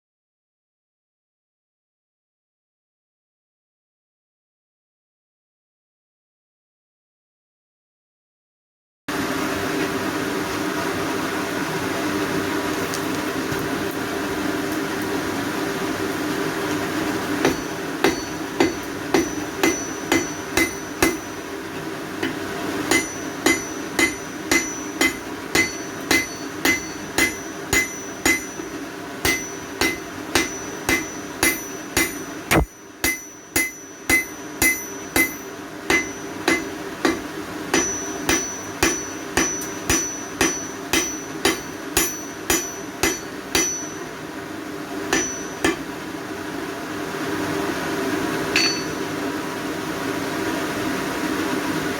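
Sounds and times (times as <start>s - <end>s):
hammer ringing on anvil: 17.4s - 21.5s, 22.2s - 44.1s, 45.1s - 45.9s, 48.5s - 49.0s.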